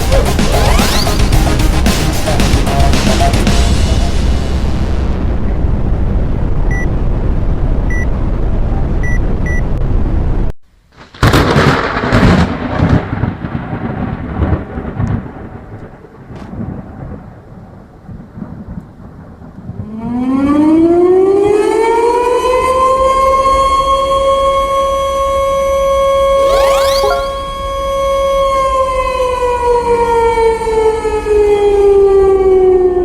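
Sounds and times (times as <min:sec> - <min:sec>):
rising siren-like tone: 0:00.6 - 0:01.2, 0:26.1 - 0:29.1
thunder-like crash rumbling: 0:11.1 - 0:15.7.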